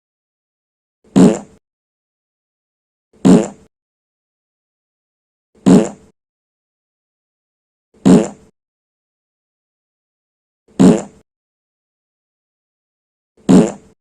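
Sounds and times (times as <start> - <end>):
low raspy farts: 1.1 - 1.6, 3.2 - 3.7, 5.6 - 6.1, 8.0 - 8.5, 10.7 - 11.2, 13.4 - 14.0.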